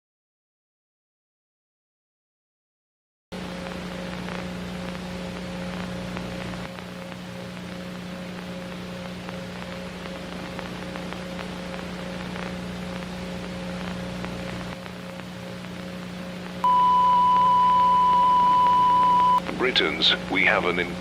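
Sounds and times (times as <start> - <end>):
low electrical hum: 3.4 - 21.0
static hiss: 3.4 - 21.0
loud steady alert beep: 16.6 - 19.4.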